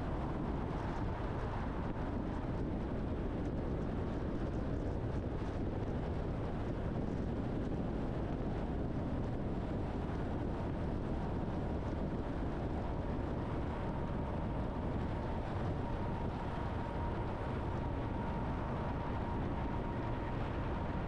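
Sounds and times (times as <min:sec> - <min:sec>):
faint steady whine: 0:00.0 - 0:21.0
truck engine and road noise: 0:06.4 - 0:21.0.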